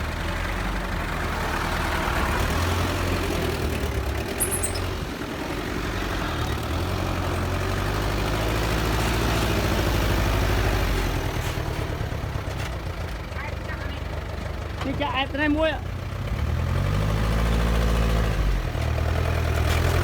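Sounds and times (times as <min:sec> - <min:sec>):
diesel engine rumbling: 0:00.0 - 0:20.0.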